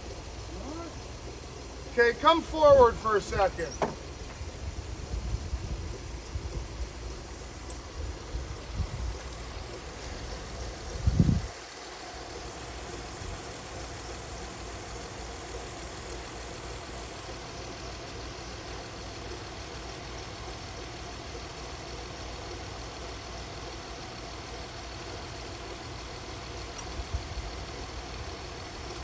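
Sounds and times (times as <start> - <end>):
car engine idling: 0.0 - 29.0
faint ticks: 24.0 - 29.0.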